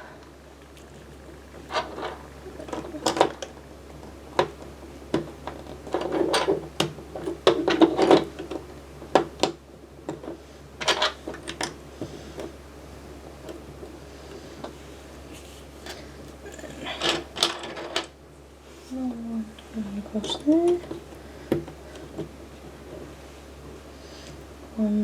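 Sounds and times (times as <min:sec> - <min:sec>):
plastic bricks clicking and clattering: 0:01.7 - 0:03.5.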